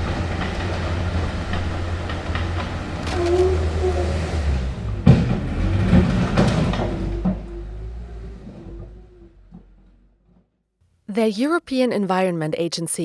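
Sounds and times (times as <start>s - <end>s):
train rumbling: 0.0s - 10.0s.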